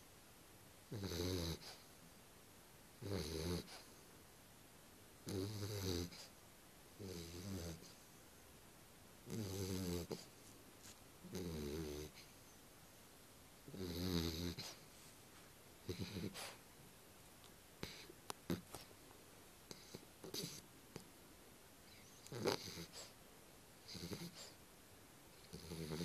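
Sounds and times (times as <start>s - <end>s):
dog snoring: 0.9s - 1.9s, 3.0s - 4.0s, 5.2s - 6.3s, 7.0s - 8.0s, 9.2s - 10.3s, 11.2s - 12.4s, 13.7s - 14.8s, 15.8s - 16.6s, 17.8s - 18.9s, 19.7s - 20.6s, 21.9s - 23.1s, 23.8s - 24.6s, 25.4s - 26.0s.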